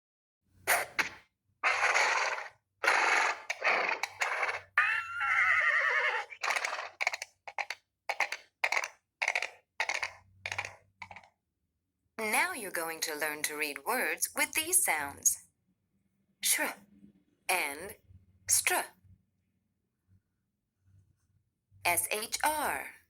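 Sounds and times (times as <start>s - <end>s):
horse whinnying: 1.6s - 7.0s.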